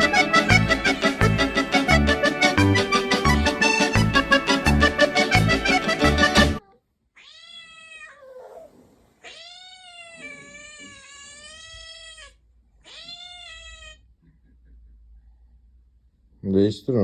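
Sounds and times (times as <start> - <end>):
cat meowing: 0.7 - 1.2, 6.6 - 14.1.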